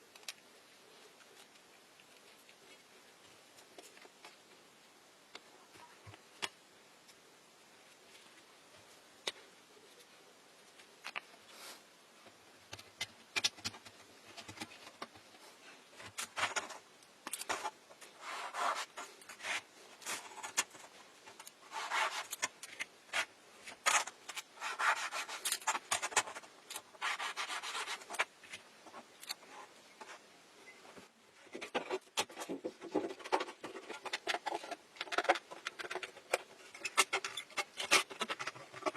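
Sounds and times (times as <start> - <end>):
rubbing and scraping strokes: 17.4 - 30.3.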